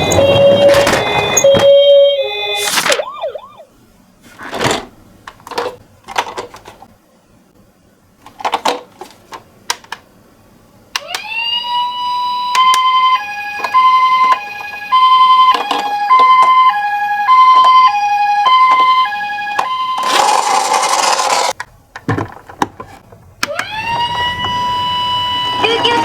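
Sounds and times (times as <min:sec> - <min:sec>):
toy electronic ambulance siren: 0:00.0 - 0:03.7, 0:11.0 - 0:21.5, 0:23.5 - 0:26.0.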